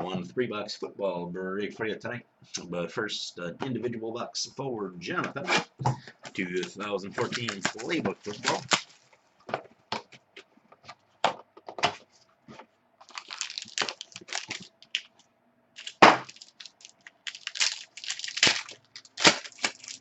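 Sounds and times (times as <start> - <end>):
wrapper and cardboard crackling: 6.6 - 9.1, 13.0 - 15.2, 15.8 - 20.0.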